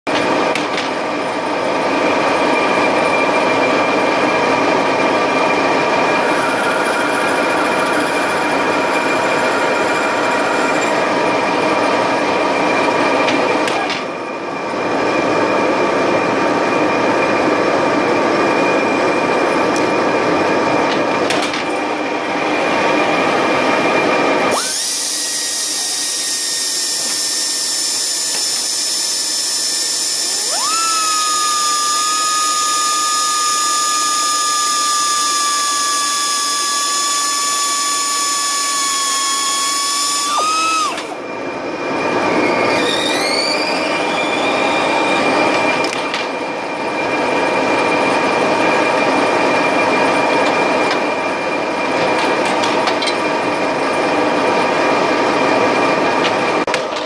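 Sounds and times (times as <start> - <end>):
high machine whine: 0.1 - 56.7
lathe machining noise: 0.2 - 18.9, 21.7 - 45.9.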